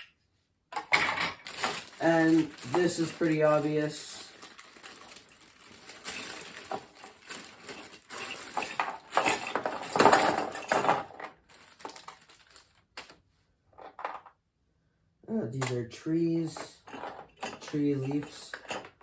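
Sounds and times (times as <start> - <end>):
plastic packaging crinkling: 1.4 - 13.2.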